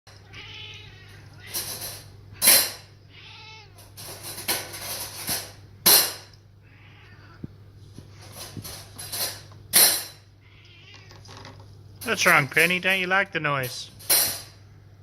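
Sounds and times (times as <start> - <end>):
cat meowing and yowling: 0.2 - 1.6, 3.1 - 3.8, 6.6 - 7.5.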